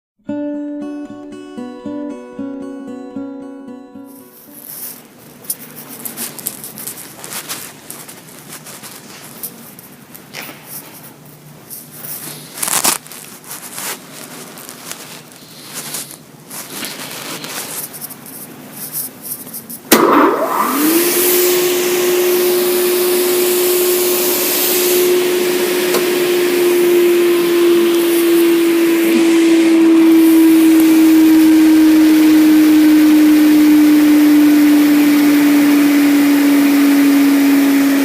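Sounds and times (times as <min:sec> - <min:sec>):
table saw whining: 0:19.9 - 0:38.0.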